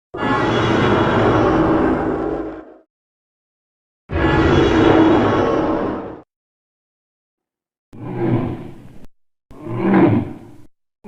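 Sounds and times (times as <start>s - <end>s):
monster roar: 0.2s - 2.7s, 4.1s - 6.2s, 9.5s - 10.4s.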